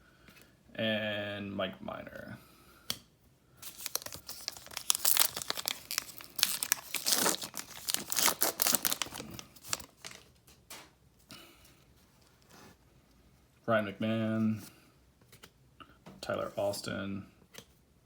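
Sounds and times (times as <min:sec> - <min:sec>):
wrapper tearing and crinkling: 0:03.6 - 0:10.3.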